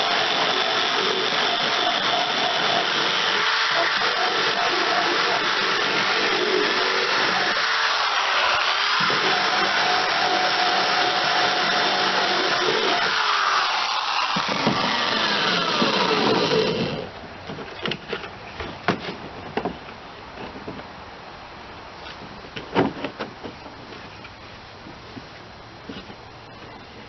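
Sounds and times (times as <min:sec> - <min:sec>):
power drill on plastic: 0:00.0 - 0:17.1
tool and plastic knocks and clicks: 0:17.4 - 0:20.9.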